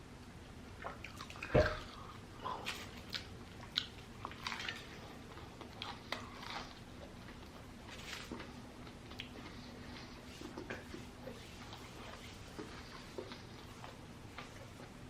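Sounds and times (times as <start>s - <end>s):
person biting and chewing: 1.0s - 11.8s.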